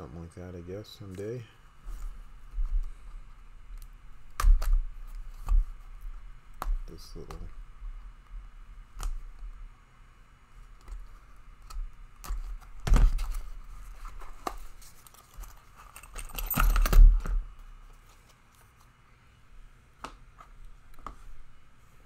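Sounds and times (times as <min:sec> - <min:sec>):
padlock and keys jangling: 0:15.9 - 0:17.2.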